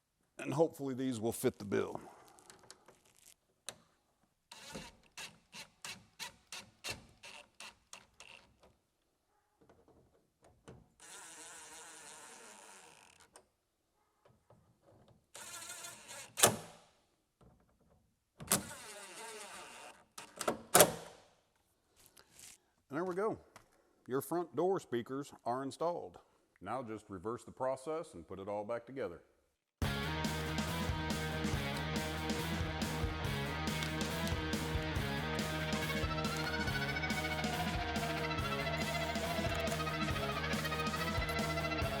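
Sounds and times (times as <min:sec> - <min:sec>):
cordless drill running: 0:04.5 - 0:05.4, 0:11.0 - 0:12.9, 0:15.4 - 0:16.4, 0:18.6 - 0:20.0, 0:30.1 - 0:42.0
screws clicking as they seat: 0:04.5 - 0:08.7, 0:15.3 - 0:16.7.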